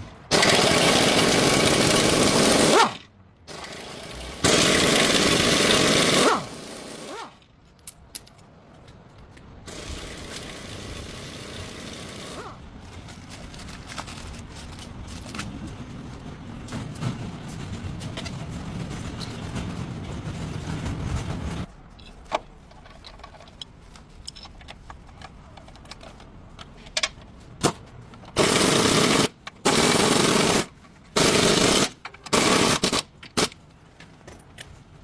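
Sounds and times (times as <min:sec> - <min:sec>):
steady rushing noise: 0:14.4 - 0:21.9.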